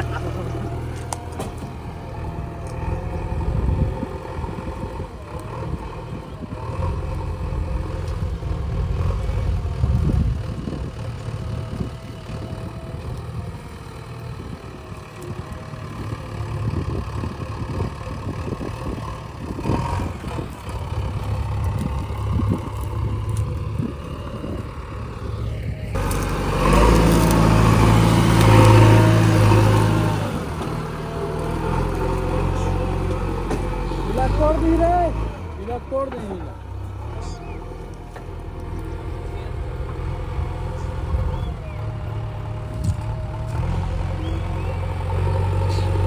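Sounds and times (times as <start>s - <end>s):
diesel engine running: 0.0s - 46.0s.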